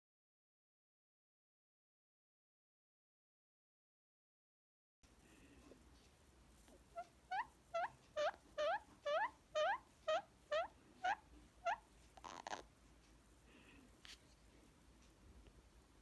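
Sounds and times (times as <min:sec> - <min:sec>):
parrot harsh rasp: 0:07.0 - 0:12.6
parrot squeaky calls: 0:07.0 - 0:12.6.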